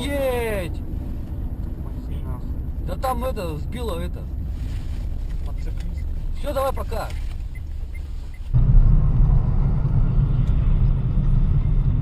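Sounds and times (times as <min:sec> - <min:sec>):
car road and engine rumble: 0:00.0 - 0:12.0.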